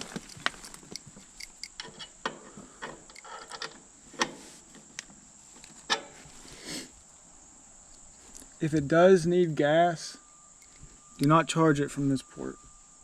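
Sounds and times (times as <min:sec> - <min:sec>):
steady high-pitched tone: 0:08.9 - 0:13.0.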